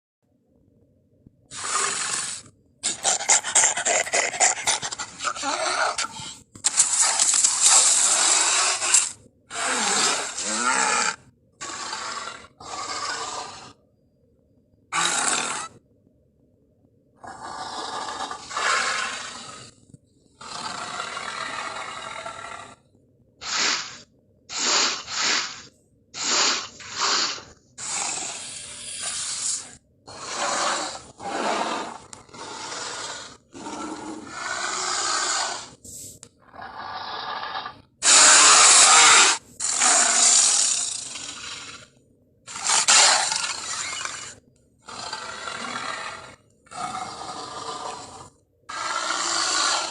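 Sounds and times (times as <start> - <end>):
gorilla grunts and roars: 1.5 - 13.8, 14.9 - 15.8, 17.2 - 19.8, 20.4 - 22.8, 23.4 - 35.8, 36.4 - 41.9, 42.5 - 49.9.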